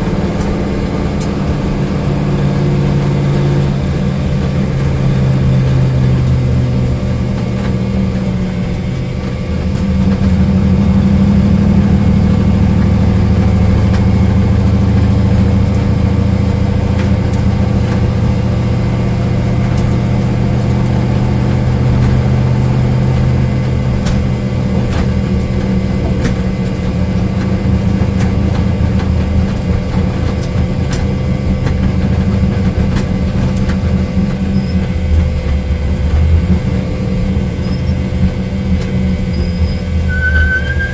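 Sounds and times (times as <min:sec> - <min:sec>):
car engine idling with misfire: 0:00.0 - 0:40.9.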